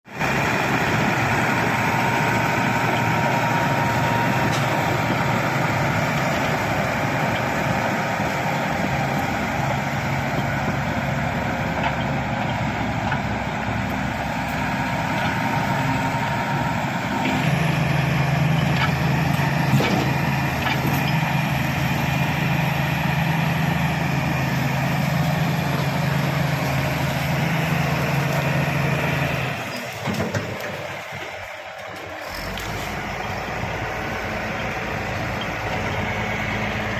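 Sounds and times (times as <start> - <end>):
bulldozer diesel engine running: 0.1 - 36.9.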